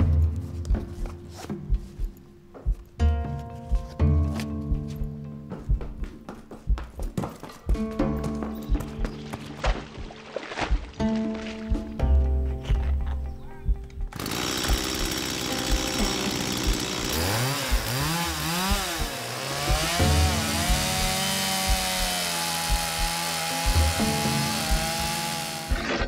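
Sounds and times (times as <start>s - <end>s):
small engine revving: 14.2s - 26.0s.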